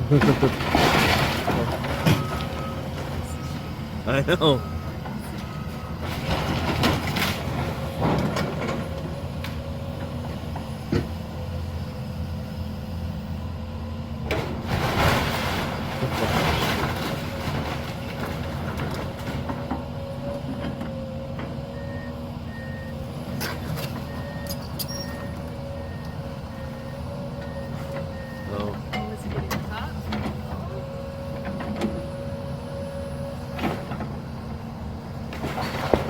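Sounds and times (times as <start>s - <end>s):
debris crashing and crunching: 0.0s - 3.7s, 5.6s - 9.1s, 14.5s - 20.6s, 35.3s - 36.0s
diesel demolition machine running: 0.0s - 36.0s
reversing beeper: 2.0s - 6.0s, 24.1s - 28.6s.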